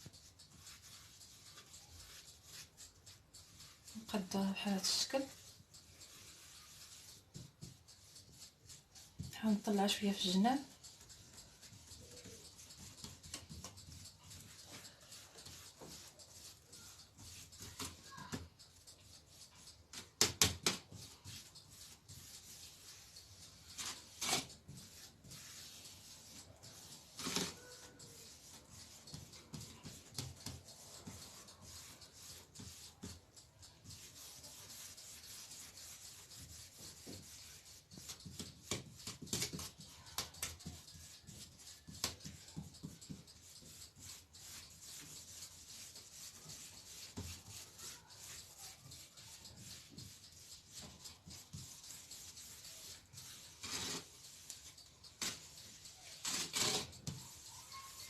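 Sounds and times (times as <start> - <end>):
utensils knocking and rubbing: 0.0 - 58.0.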